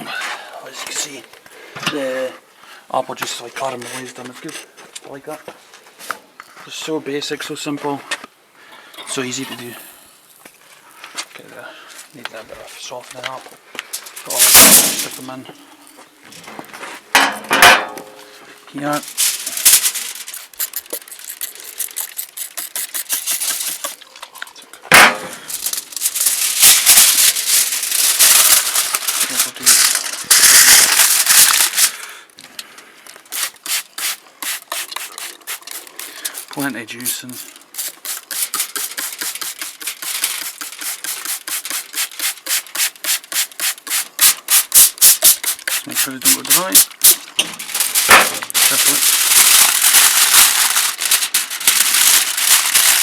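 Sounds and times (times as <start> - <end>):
aluminium foil crinkling: 10.4 - 17.0, 18.2 - 53.0
spray bottle squirts: 19.4 - 24.5, 33.3 - 36.6, 37.4 - 47.2.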